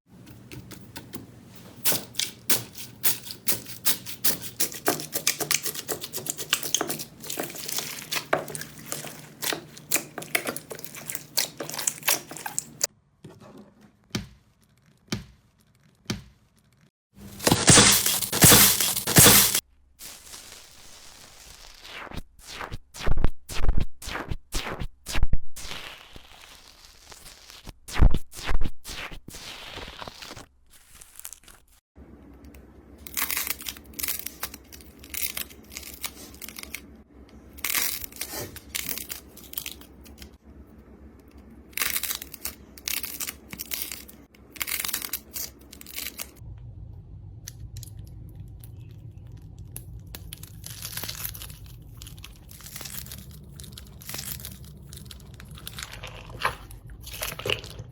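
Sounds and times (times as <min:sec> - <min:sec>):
slime squishing and popping: 0:47.5 - 0:57.9.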